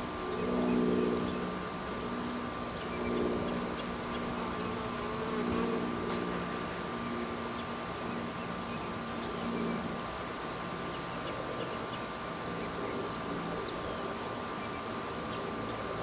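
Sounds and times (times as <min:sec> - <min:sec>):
honeybees buzzing: 0:00.1 - 0:08.9.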